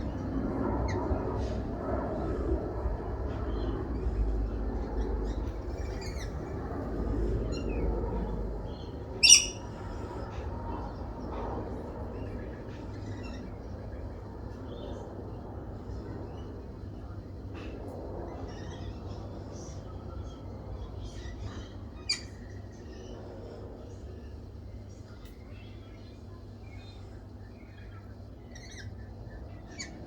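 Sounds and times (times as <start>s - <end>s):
small songbirds chirping: 7.4s - 9.9s.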